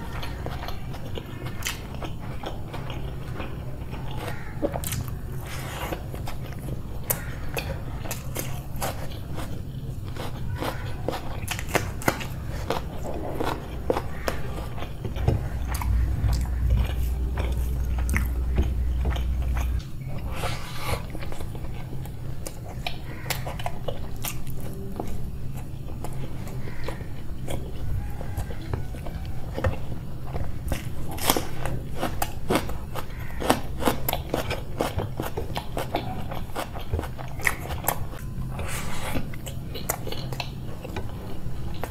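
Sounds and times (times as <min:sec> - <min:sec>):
low steady hum: 0:00.0 - 0:41.9
person chewing crunchy food: 0:00.0 - 0:41.9
low rumble: 0:14.3 - 0:22.2.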